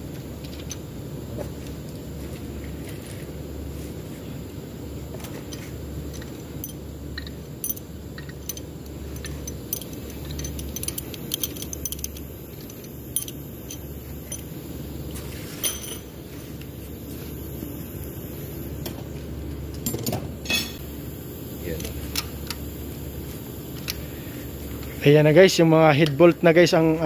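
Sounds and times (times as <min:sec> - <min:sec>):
steady low hum: 0:00.0 - 0:27.0
metal tools clinking: 0:06.6 - 0:14.5, 0:15.6 - 0:16.1.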